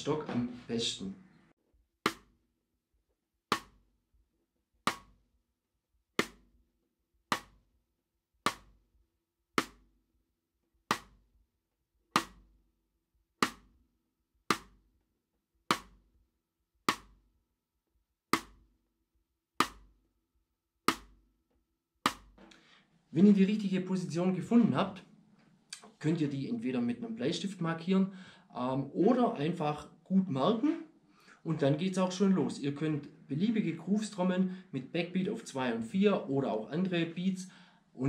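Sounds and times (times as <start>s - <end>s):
snare drum rim clicks: 10.9s - 11.2s, 12.2s - 12.4s, 14.5s - 14.8s, 15.7s - 16.0s, 16.9s - 17.2s, 19.6s - 19.9s, 20.9s - 21.2s, 22.1s - 22.6s.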